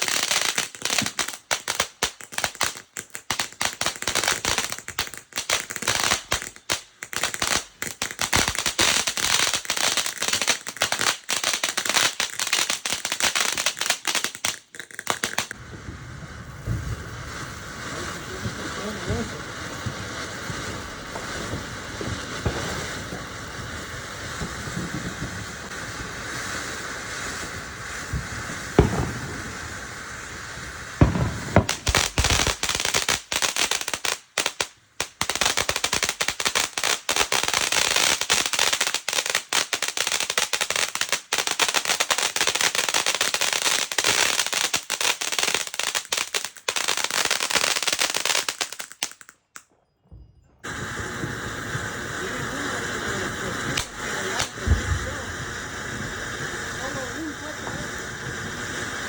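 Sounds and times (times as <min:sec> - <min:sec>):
rapid firecracker cracks: 0:00.0 - 0:15.9, 0:16.6 - 0:49.7, 0:50.6 - 0:59.0
fireworks popping: 0:00.0 - 0:59.0
sharp firework bang: 0:15.6 - 0:26.0, 0:27.4 - 0:32.6, 0:50.6 - 0:58.5.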